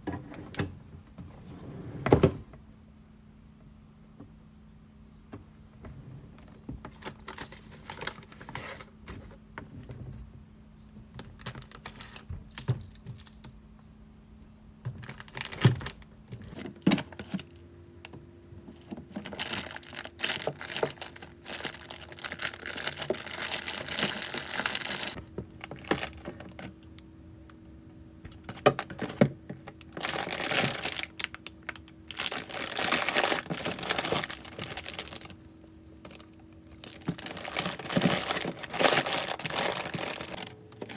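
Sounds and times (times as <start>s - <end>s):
rustling and crinkling: 6.4s - 10.2s, 14.9s - 40.9s
faint steady hum: 16.2s - 40.9s.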